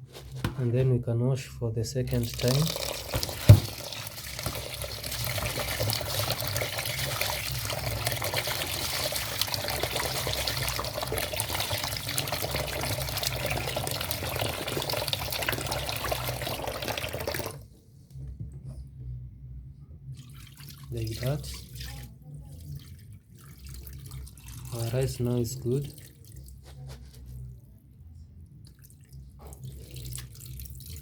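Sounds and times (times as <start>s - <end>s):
rice being washed in water: 2.1s - 17.6s, 20.3s - 26.3s.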